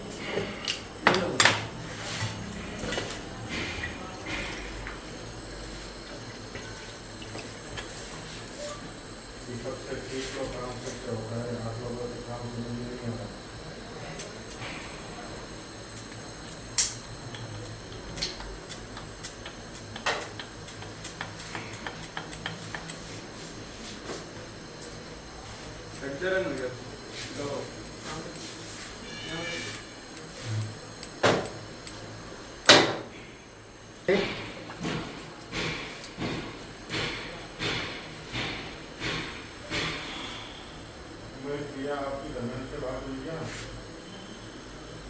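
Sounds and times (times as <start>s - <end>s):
steady low hum: 0.0s - 45.0s.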